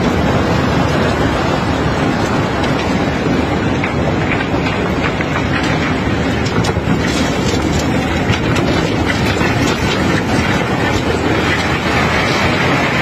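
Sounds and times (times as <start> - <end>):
cobblestones rattling: 0.0 - 13.0
unloading machinery rumbling: 0.0 - 13.0.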